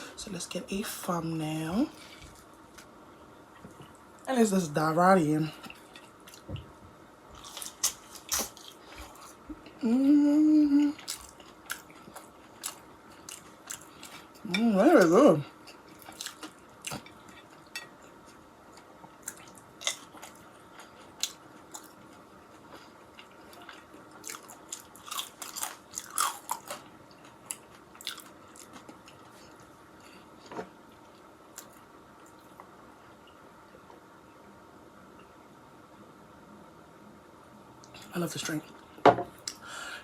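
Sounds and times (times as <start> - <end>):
person chewing food: 5.6 - 6.5, 7.4 - 9.8, 10.8 - 14.5, 15.5 - 33.4.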